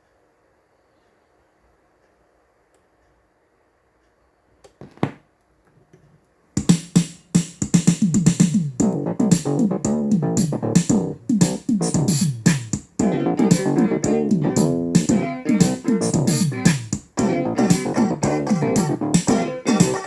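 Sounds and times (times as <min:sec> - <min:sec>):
soft thumps: 0:04.8 - 0:05.2
music with drum beat and keyboards: 0:06.6 - 0:20.0.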